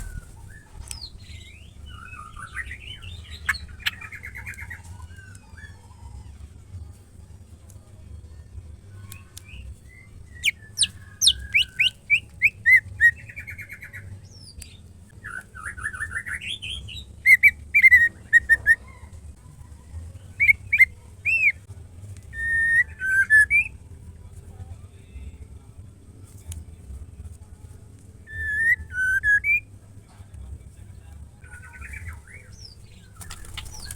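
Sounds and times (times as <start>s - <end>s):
bird whistling and trilling: 0.0s - 5.8s, 9.5s - 14.1s, 15.2s - 18.9s, 20.4s - 21.6s, 22.4s - 23.8s, 28.3s - 29.6s
faint low hum: 0.0s - 33.9s.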